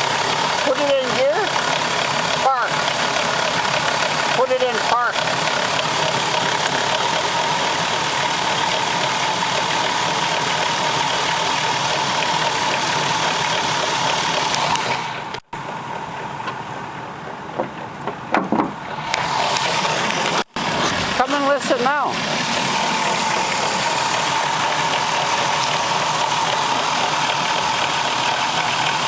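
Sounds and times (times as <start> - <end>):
car engine idling: 0.0 - 29.0.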